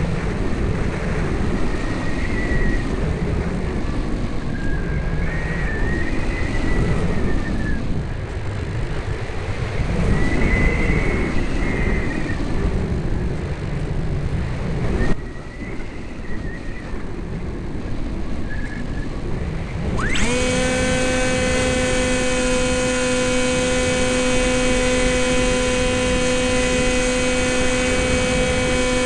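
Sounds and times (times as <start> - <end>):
wind rumble on microphone: 0.0 - 29.0
model plane electric motor whining: 19.8 - 29.0.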